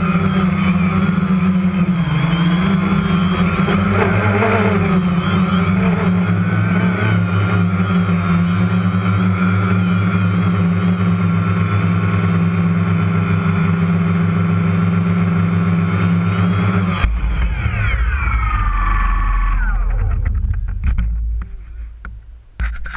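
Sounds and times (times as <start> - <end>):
sound with falling pitch: 0.0 - 10.6, 15.3 - 20.8
electric motor hum: 0.0 - 17.1.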